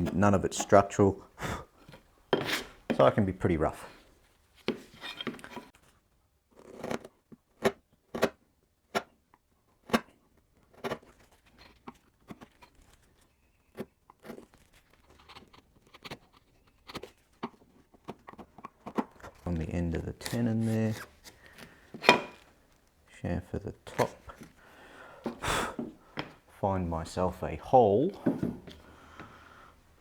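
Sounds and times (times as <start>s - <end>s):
chisel cutting wood: 0.0s - 1.1s, 1.8s - 3.2s, 13.7s - 22.6s, 28.1s - 29.1s
chisel scraping wood: 0.0s - 1.2s, 1.8s - 5.8s, 6.6s - 8.3s, 10.7s - 22.9s, 23.8s - 26.4s, 28.1s - 29.3s.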